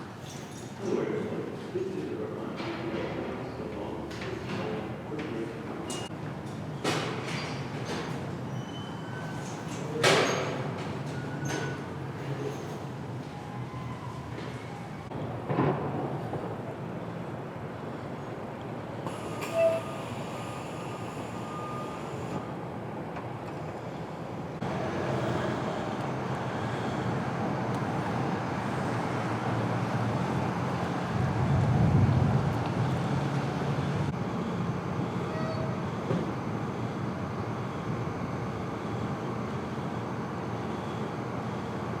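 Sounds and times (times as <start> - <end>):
traffic rumble: 22.1 - 35.2.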